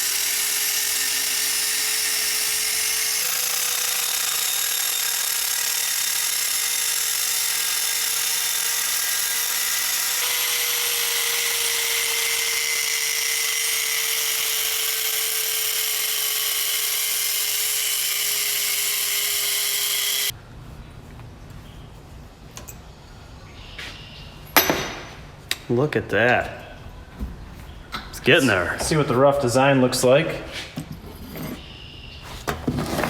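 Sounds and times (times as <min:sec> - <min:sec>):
electric grinder cutting metal: 0:00.0 - 0:20.3.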